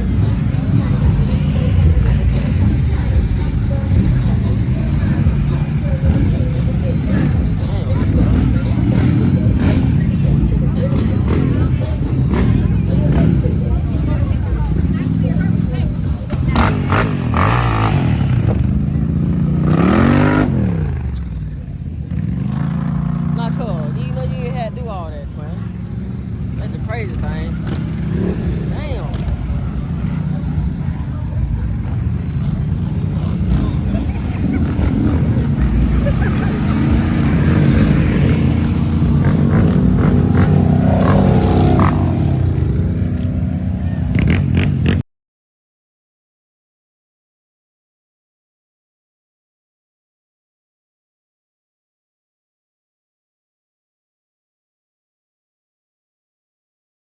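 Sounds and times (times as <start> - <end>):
atv engine revving: 0.0 - 45.0.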